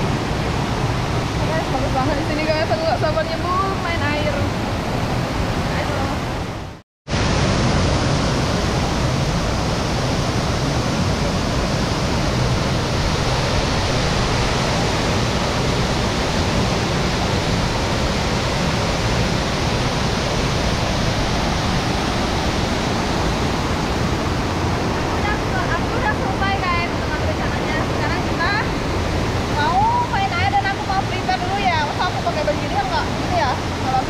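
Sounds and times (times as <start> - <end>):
waterfall rushing: 0.0 - 34.0.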